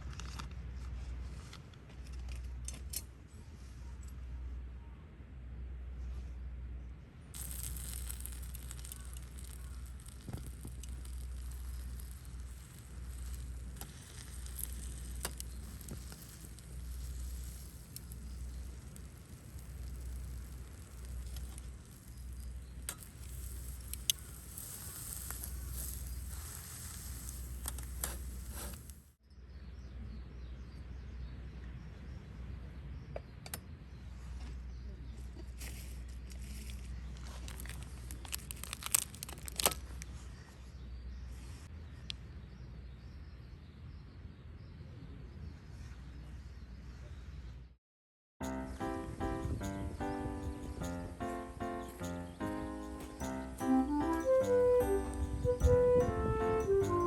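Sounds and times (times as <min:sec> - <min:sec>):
campfire crackling and popping: 0:07.4 - 0:29.0, 0:36.6 - 0:40.0.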